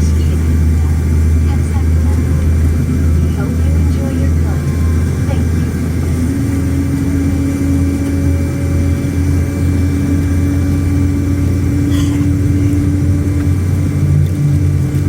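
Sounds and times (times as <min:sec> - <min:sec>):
jet engines droning in cabin: 0:00.0 - 0:15.0.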